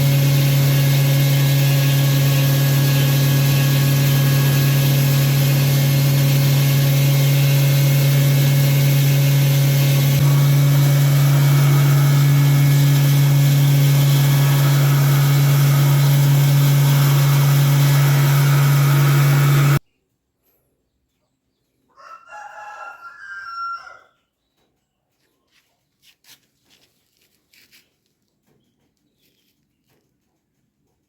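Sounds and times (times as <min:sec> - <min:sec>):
disk mill grinding: 0:00.0 - 0:19.8.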